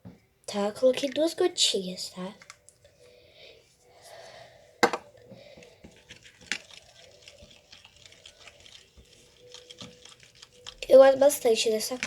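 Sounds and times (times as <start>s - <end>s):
spoon stirring sticky glue: 5.2s - 12.0s.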